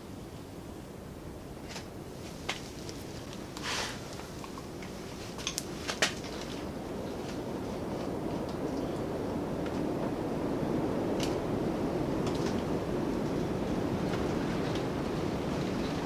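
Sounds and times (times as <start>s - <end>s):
short scrape: 3.6s - 4.0s.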